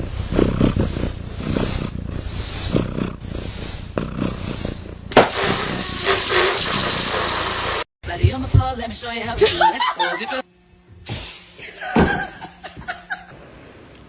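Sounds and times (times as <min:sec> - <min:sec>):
animal making rough low sounds: 0:00.0 - 0:07.6.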